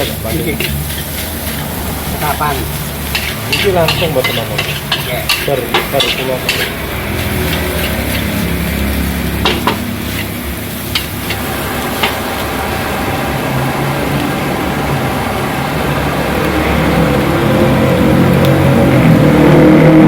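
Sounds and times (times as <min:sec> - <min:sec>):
noodles sizzling in a wok: 0:00.0 - 0:20.0
vehicle engine: 0:00.0 - 0:20.0
metal spatula clanking on pan: 0:03.0 - 0:08.5, 0:09.4 - 0:12.3.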